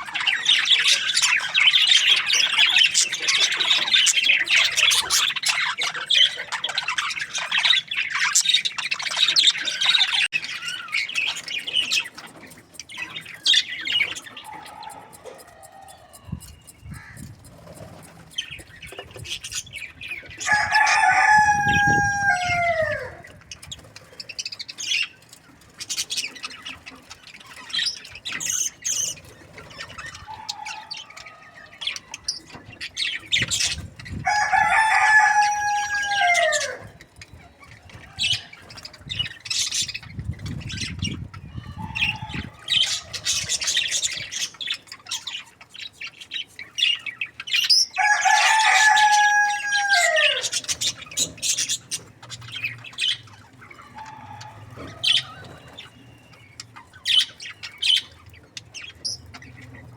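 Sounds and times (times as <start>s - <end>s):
bird chirps and squawks: 0.0s - 22.6s
rooster crowing: 14.5s - 17.2s, 20.4s - 23.2s, 34.2s - 36.9s, 41.6s - 43.2s, 48.0s - 50.6s, 53.8s - 55.8s.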